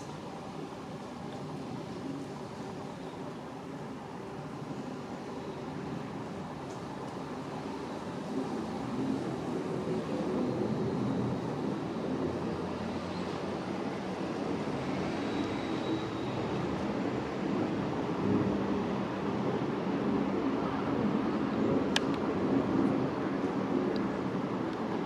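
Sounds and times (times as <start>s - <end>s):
jet engine rumble overhead: 0.0s - 25.0s.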